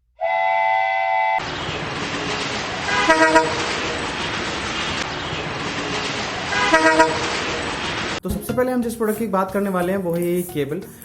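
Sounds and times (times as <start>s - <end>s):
street traffic noise: 1.4s - 8.3s
car horn honks: 2.9s - 3.6s, 6.6s - 7.3s.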